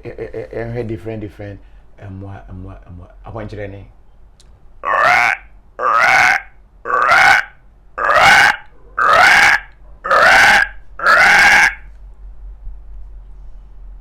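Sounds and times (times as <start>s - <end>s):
man imitating an animal call: 4.8s - 11.9s.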